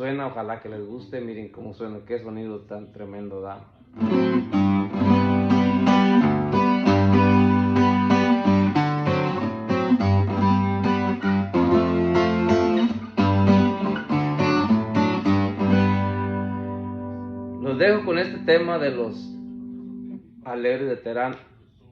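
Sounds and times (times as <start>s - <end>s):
bajo sexto strummed chords: 3.9s - 20.9s.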